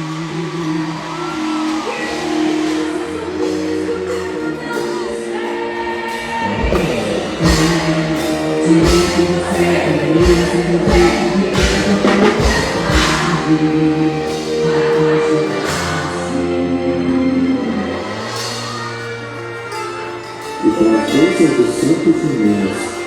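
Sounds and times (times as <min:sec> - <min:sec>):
music with singing: 0:00.0 - 0:23.0
heavy drum beats: 0:06.1 - 0:16.6.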